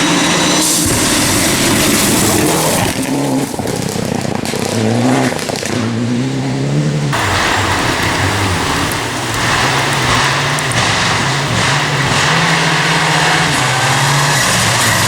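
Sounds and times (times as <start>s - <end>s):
rally car engine at full throttle: 0.0s - 15.0s.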